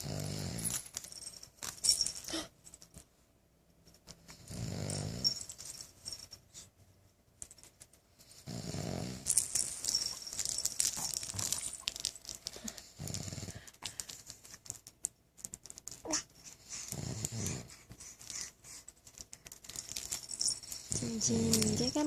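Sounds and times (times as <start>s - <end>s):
man snoring: 0.0s - 0.6s, 4.5s - 5.2s, 8.5s - 9.2s.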